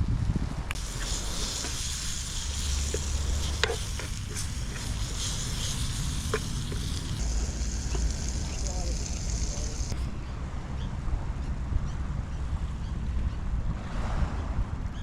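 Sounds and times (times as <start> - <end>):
fish sizzling in oil: 0.8 - 10.0
utensil clicking on pan: 0.8 - 10.0.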